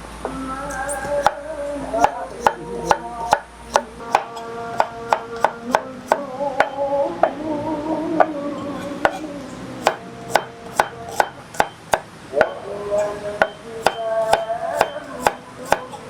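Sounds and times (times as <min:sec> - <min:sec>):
knife chopping on cutting board: 0:01.0 - 0:01.4, 0:02.0 - 0:06.7, 0:09.8 - 0:12.0, 0:13.4 - 0:16.0.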